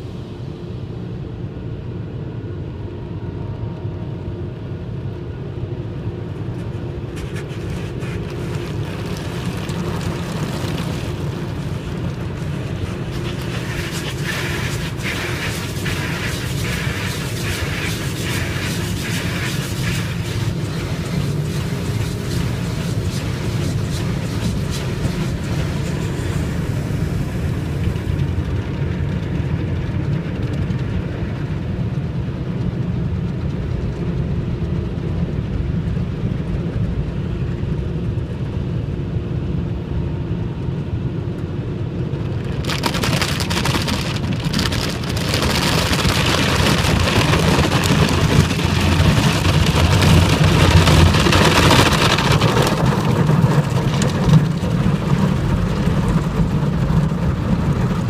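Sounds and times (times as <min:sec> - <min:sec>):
steady low rumble: 0:00.0 - 0:58.0
water spray hitting a car: 0:06.6 - 0:26.6, 0:42.6 - 0:55.9.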